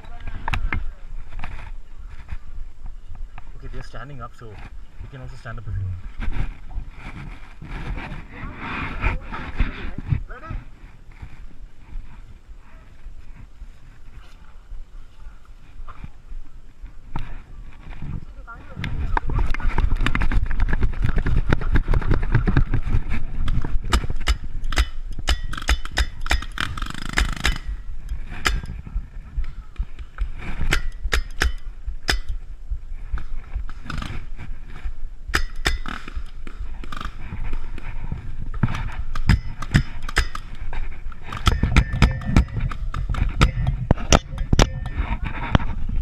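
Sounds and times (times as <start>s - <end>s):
sharp knocks and pops: 19.3s - 28.8s, 38.5s - 45.8s
camera handling rumble: 35.8s - 46.0s.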